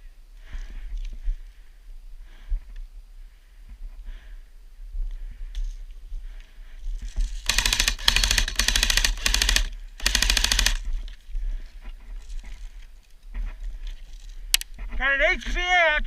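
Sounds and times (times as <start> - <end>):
airsoft gun firing full auto: 7.4 - 10.9.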